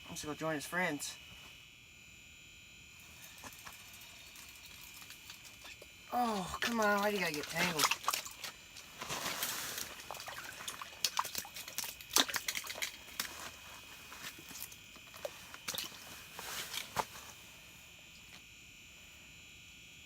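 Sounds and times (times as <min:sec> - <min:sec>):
faint high hum: 0:00.0 - 0:20.0.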